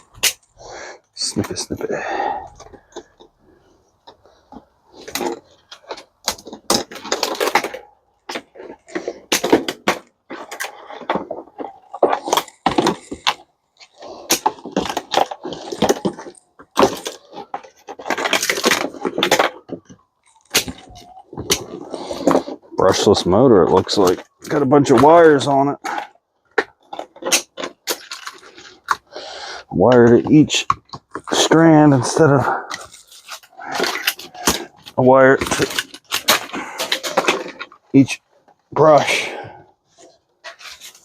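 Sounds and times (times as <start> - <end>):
plastic and metal snapping: 0.0 - 0.6, 4.0 - 22.8, 23.7 - 29.1, 29.9 - 37.8.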